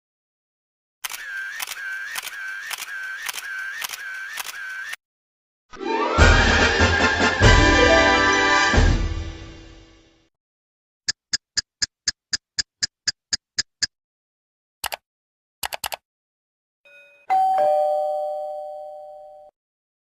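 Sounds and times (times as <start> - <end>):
short clicks: 1.0 - 5.0, 14.8 - 15.0, 15.6 - 16.0
bell-like chime ringing: 16.9 - 19.5.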